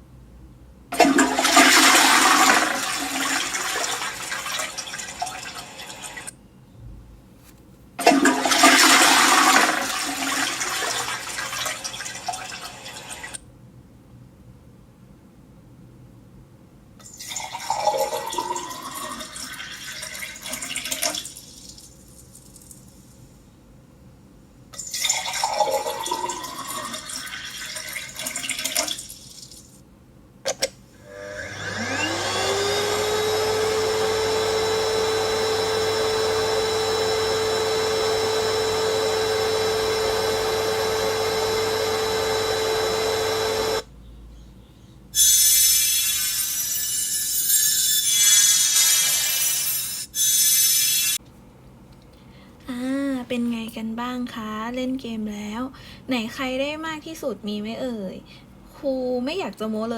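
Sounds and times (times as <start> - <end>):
electric motor whining: 31.0 - 43.8.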